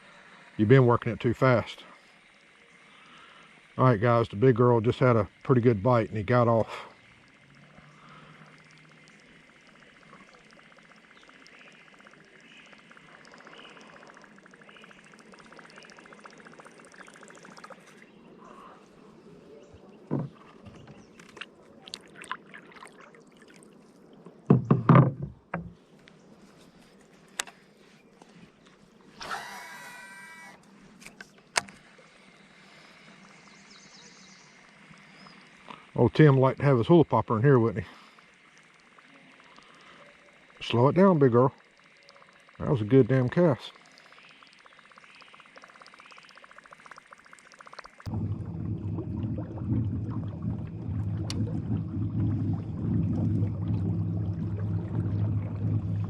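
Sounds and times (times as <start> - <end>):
fishing reel whirring: 5.8 - 18.0, 29.1 - 30.7, 38.0 - 48.1.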